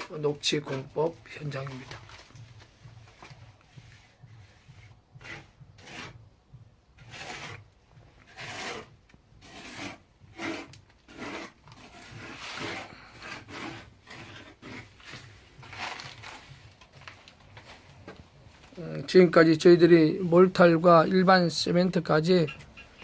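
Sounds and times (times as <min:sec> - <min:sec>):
trowel scraping mortar: 0:03.8 - 0:06.2, 0:07.0 - 0:16.7.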